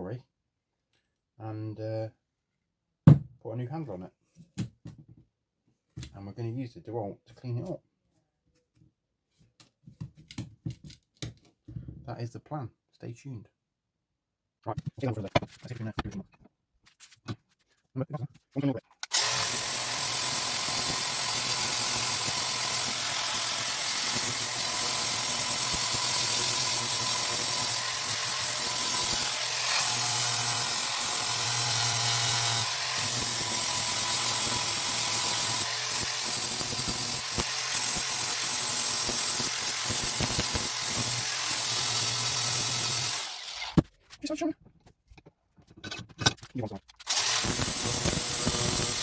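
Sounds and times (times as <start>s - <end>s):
angle grinder grinding metal: 19.1s - 43.8s, 47.0s - 49.0s.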